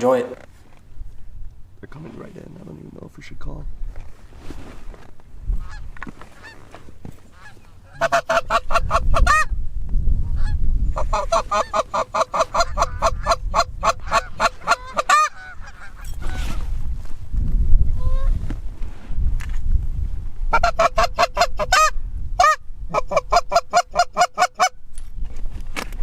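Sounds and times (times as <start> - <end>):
wind rumble: 0.8 - 24.0
geese honking: 5.6 - 6.7, 7.3 - 9.5, 10.4 - 16.5.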